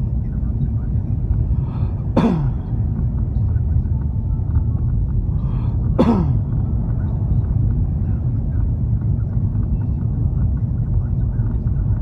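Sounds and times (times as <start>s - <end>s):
car rumble from inside cabin: 0.0s - 12.0s.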